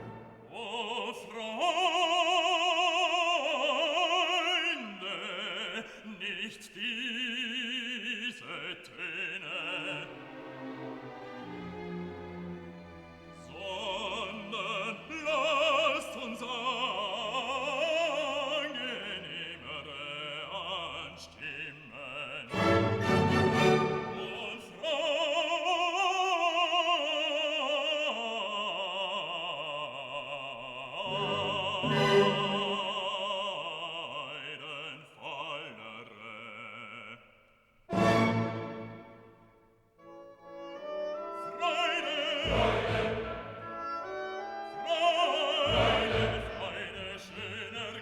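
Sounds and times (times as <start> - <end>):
orchestral accompaniment: 0.0 - 1.2, 9.6 - 19.7, 22.5 - 24.9, 31.0 - 33.5, 37.9 - 48.0
operatic singing: 0.0 - 48.0.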